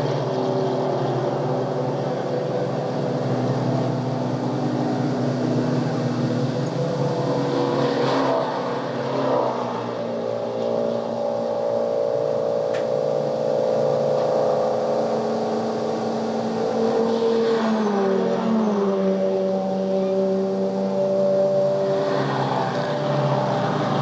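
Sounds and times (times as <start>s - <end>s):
engine running: 0.0s - 24.0s
tape hiss: 11.0s - 17.2s.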